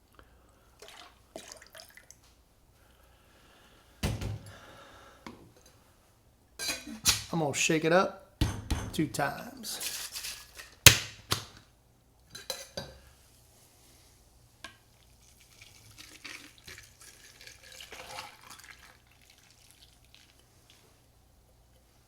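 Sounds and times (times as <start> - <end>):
drink and ice pouring into glass: 15.2 - 20.4.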